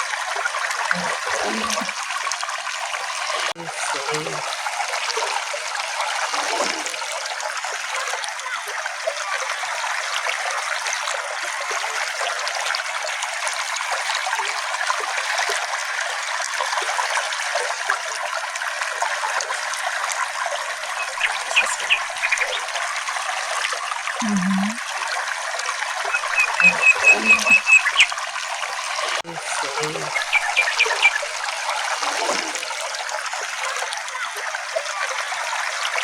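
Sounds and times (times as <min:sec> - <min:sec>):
brook babbling over stones: 0:00.0 - 0:36.0.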